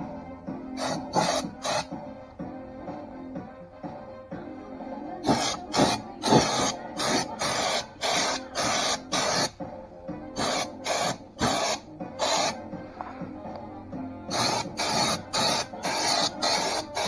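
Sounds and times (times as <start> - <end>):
background music: 0.0 - 17.0
spray hissing bursts: 0.8 - 2.0, 5.2 - 9.5, 10.4 - 12.6, 14.3 - 17.0.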